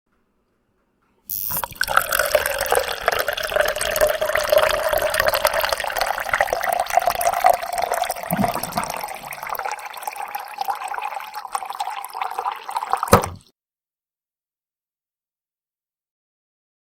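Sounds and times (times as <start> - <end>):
water pouring into container: 1.3 - 13.5.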